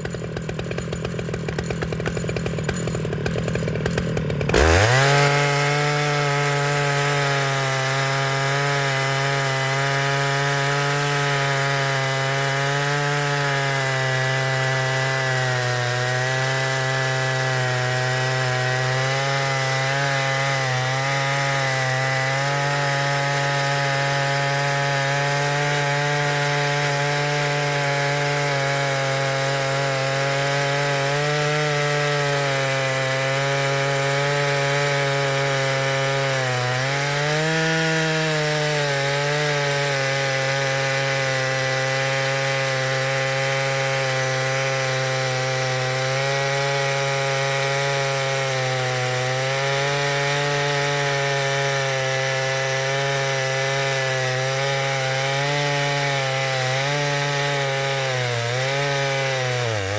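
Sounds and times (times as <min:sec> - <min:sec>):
chainsaw ripping a log: 0:00.0 - 0:59.9.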